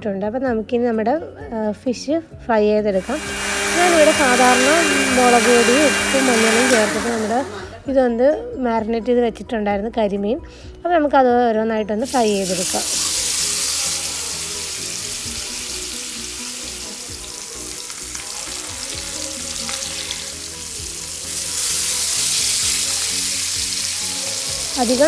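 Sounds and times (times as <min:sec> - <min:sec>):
fish sizzling in hot oil: 0:03.0 - 0:07.6, 0:12.0 - 0:25.0.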